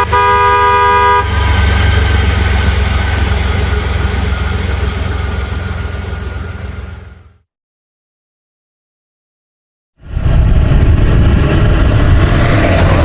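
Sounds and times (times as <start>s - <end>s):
vehicle horn toot: 0.0s - 1.8s
low engine rumble: 0.0s - 7.4s, 10.0s - 13.0s.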